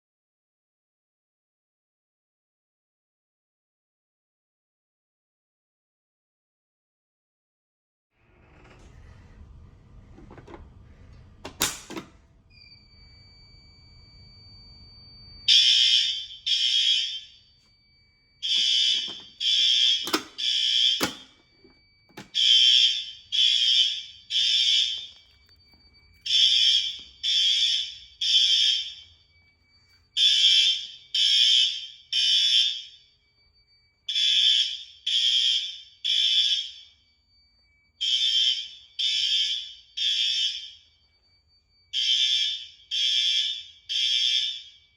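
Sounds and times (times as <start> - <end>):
fire alarm horn blasts: 11.0 - 44.9.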